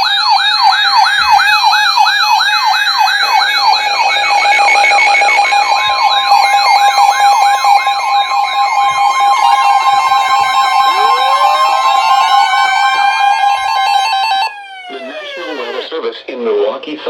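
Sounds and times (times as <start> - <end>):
electronic yelp siren: 0.0 - 16.0
steady alert tones: 2.2 - 15.9.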